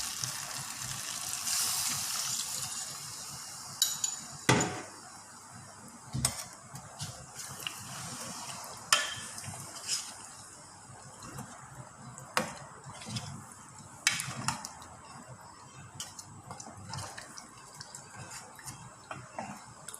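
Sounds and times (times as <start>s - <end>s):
hiss: 0.0s - 3.7s
metal cookware clinking: 3.8s - 4.9s.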